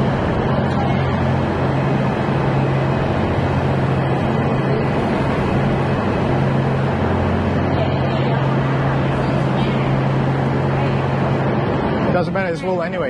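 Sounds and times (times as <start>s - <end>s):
train rumble inside carriage: 0.0s - 13.0s.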